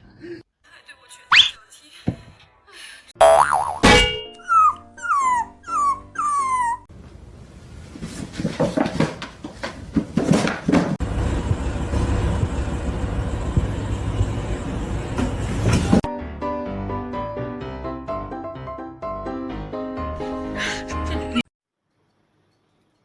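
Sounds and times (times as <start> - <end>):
dog whimpering: 4.5 - 6.9
knocks and rustling: 8.0 - 11.0
steady low rumbling: 11.0 - 15.8.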